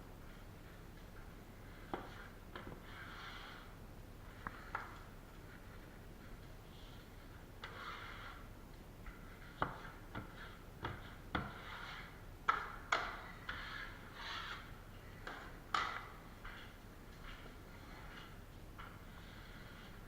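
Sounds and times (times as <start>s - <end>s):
knife scraping compound: 1.7s - 4.9s, 6.9s - 8.5s, 9.2s - 20.0s.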